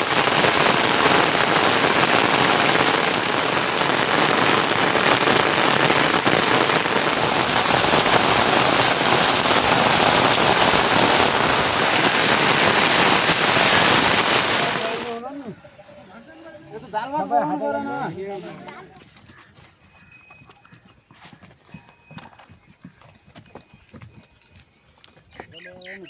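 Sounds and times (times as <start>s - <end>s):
heavy rain falling: 0.0s - 15.2s.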